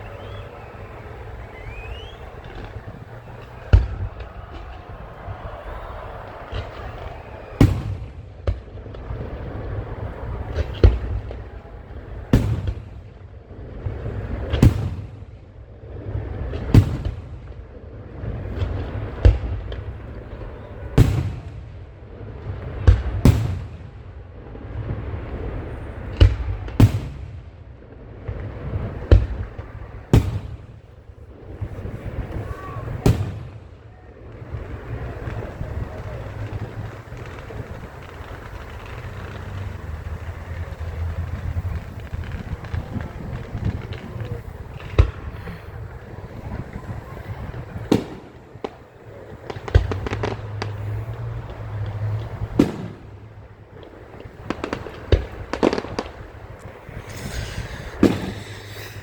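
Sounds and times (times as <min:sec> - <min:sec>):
fireworks bursting with sharp bangs: 0:00.0 - 0:59.0
rumbling echoes: 0:28.5 - 0:59.0.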